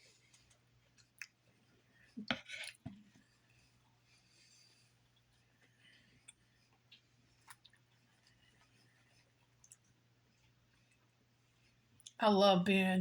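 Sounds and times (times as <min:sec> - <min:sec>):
chewing salad: 0:00.2 - 0:01.6, 0:05.0 - 0:12.2.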